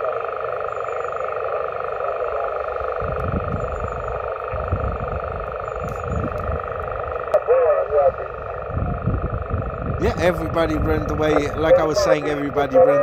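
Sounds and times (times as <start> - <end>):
radio static hiss: 0.0 - 13.0
wind gusting on microphone: 2.6 - 12.7.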